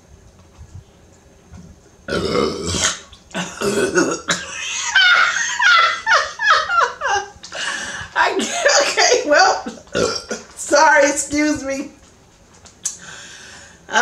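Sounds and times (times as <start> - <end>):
woman burping: 2.1 - 4.7, 9.7 - 10.5.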